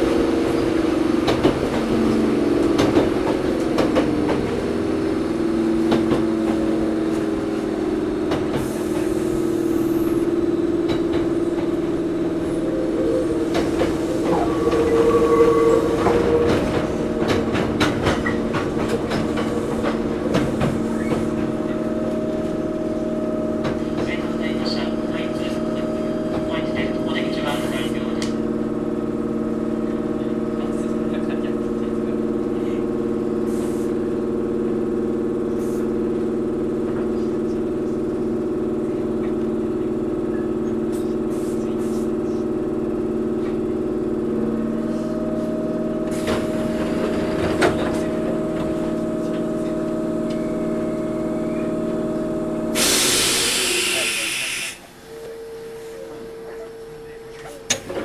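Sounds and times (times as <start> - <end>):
electric train machinery humming: 0.0 - 58.0
compressed air hissing: 52.7 - 54.8.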